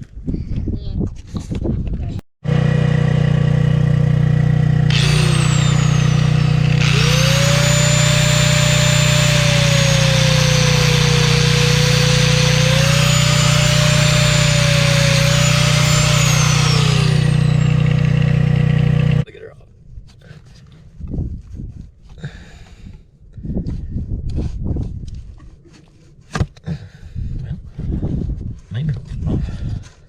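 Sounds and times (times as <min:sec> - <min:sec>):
electric grinder whining: 0:02.4 - 0:19.2
generator engine hum: 0:02.4 - 0:19.2.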